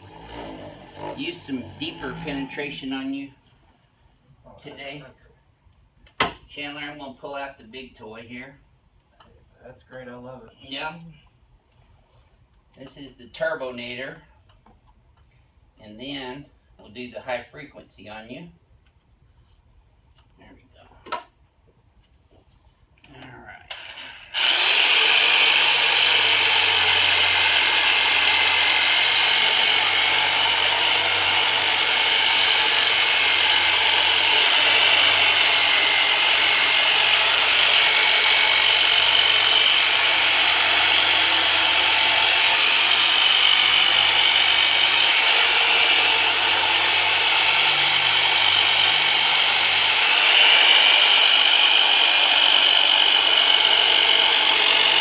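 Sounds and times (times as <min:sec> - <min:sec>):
massager motor buzz: 0:00.0 - 0:02.9, 0:24.4 - 0:55.0.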